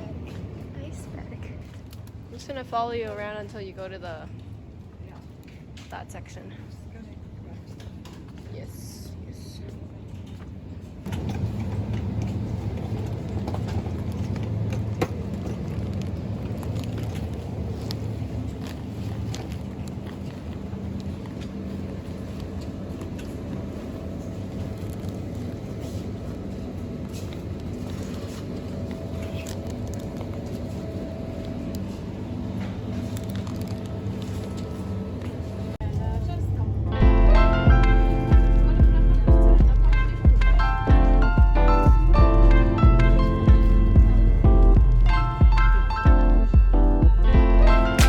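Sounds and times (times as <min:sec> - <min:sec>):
low mechanical rumble with hum: 0:11.0 - 0:48.0.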